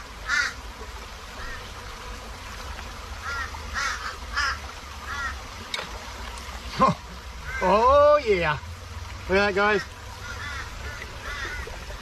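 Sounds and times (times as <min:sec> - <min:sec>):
bird calling: 0:03.2 - 0:05.4, 0:07.4 - 0:07.9, 0:09.6 - 0:12.0.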